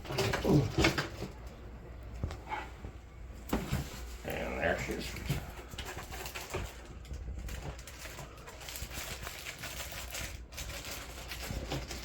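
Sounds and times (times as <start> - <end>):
cardboard packaging rustling: 3.6 - 12.0.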